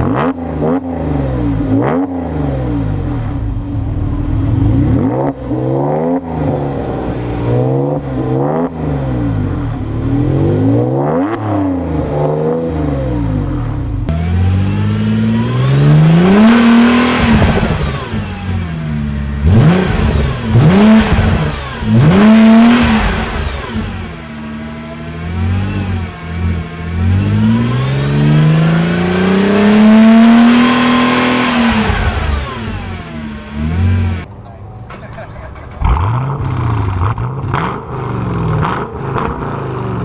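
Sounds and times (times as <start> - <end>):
car engine revving hard: 14.1 - 34.3.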